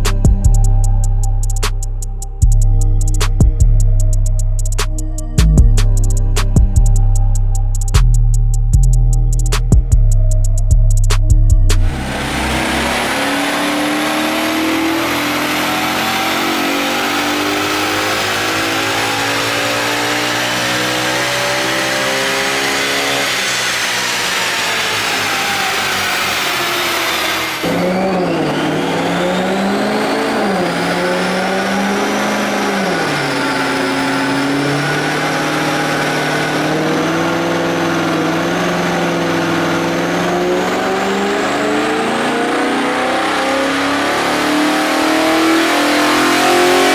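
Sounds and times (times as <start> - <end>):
car engine revving: 11.7 - 46.9.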